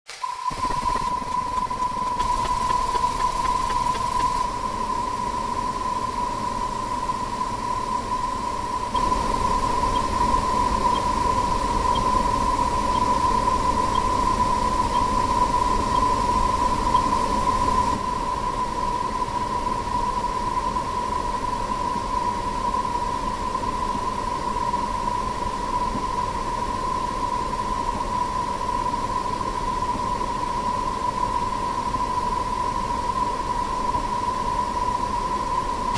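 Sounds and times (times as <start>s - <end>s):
sped-up sound effects hiss: 0.1s - 18.0s.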